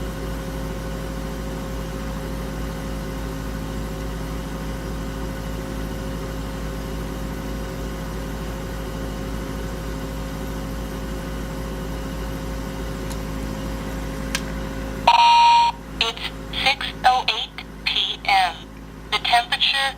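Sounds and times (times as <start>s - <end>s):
air conditioner humming: 12.1s - 19.9s.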